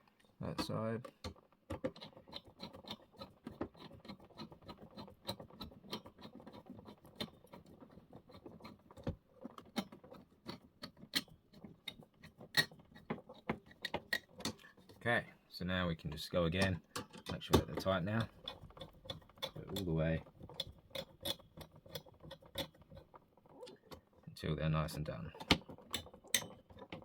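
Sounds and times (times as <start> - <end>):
screwdriver clicks and scratches: 1.2 - 15.0, 16.6 - 23.2.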